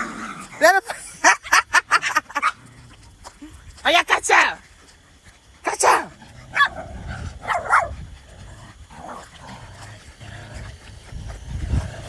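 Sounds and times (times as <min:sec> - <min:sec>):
dogs growling: 0:00.0 - 0:03.7, 0:04.6 - 0:12.0
dog yelping: 0:05.8 - 0:08.0.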